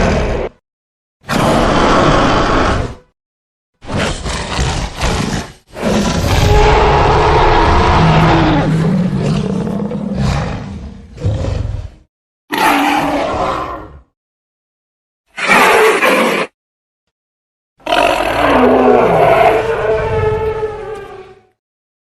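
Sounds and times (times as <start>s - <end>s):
creature roaring: 3.8s - 14.1s, 17.8s - 21.5s.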